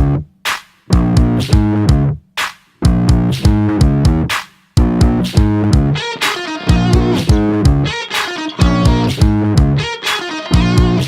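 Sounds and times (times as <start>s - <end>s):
bass guitar: 0.0s - 11.0s
driving beat: 0.0s - 11.0s
electric guitar: 5.8s - 11.0s.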